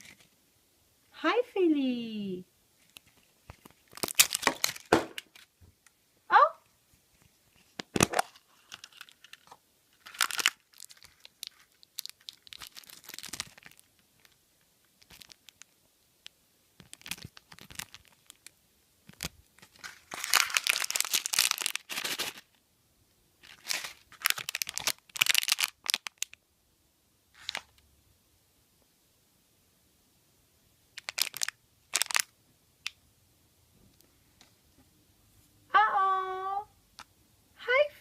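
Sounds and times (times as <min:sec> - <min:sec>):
foil wrapper tearing and crinkling: 0:03.5 - 0:05.5, 0:07.9 - 0:14.4, 0:15.0 - 0:15.7, 0:16.8 - 0:18.5, 0:19.1 - 0:22.6, 0:23.4 - 0:26.4, 0:31.0 - 0:32.3.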